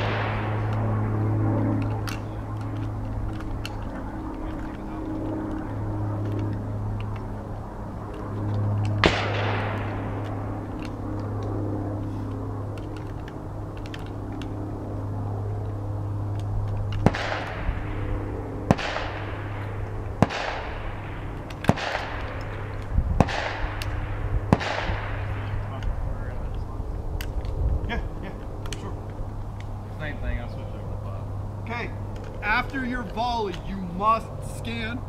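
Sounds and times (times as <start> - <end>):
shotgun shots echoing: 0.0 - 1.2, 9.0 - 10.9, 17.0 - 25.8
steady low hum: 0.0 - 35.0.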